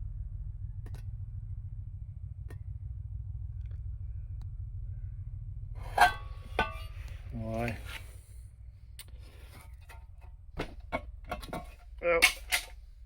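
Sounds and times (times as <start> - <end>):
low rumble: 0.0 - 13.0
metal clank ringing: 5.8 - 7.1, 10.6 - 12.8.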